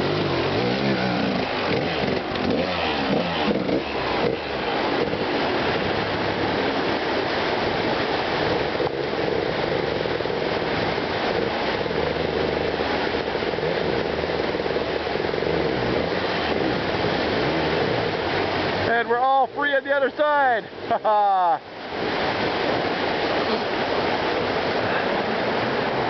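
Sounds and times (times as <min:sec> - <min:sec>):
dirt bike engine running: 0:00.0 - 0:19.0.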